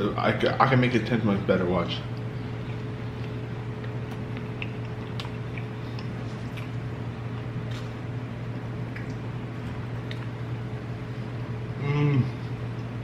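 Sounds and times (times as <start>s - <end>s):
low electrical hum: 0.0s - 13.0s
person chewing: 2.1s - 10.5s.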